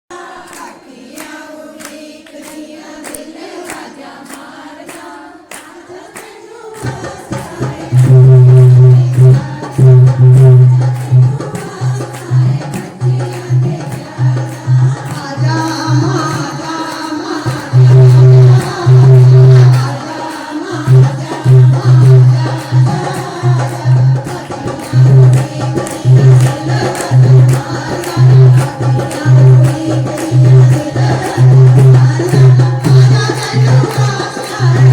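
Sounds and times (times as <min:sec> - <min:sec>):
devotional singing: 0:00.1 - 0:34.9
sharp claps: 0:00.4 - 0:08.2, 0:09.1 - 0:15.3, 0:22.0 - 0:34.9
hand drum beat: 0:06.8 - 0:34.9.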